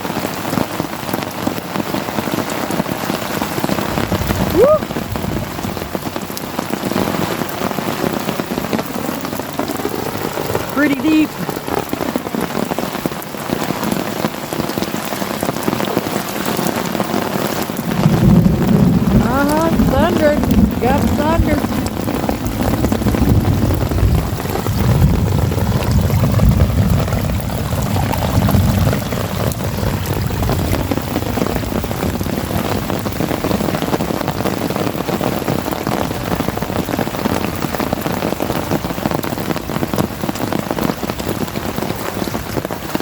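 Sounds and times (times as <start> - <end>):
heavy rain on an umbrella: 0.0 - 43.0
low rumble of thunder: 2.9 - 10.8, 17.6 - 42.6.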